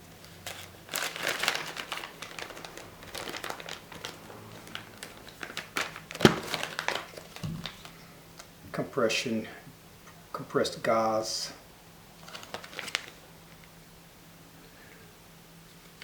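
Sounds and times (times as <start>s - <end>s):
plastic packaging crinkling: 0.0s - 8.5s, 12.2s - 13.8s.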